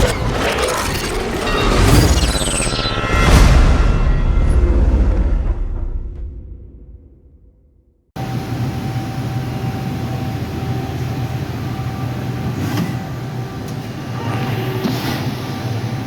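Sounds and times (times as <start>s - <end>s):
industrial machinery humming: 0.0s - 7.1s, 8.2s - 16.0s.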